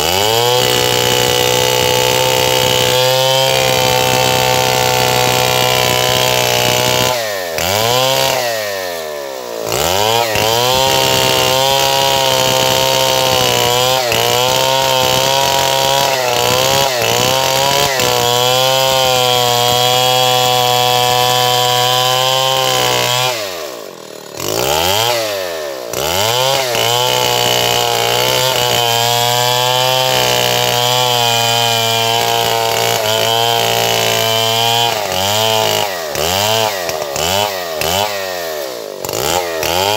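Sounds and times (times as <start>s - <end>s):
chainsaw running at high revs: 0.0s - 39.9s.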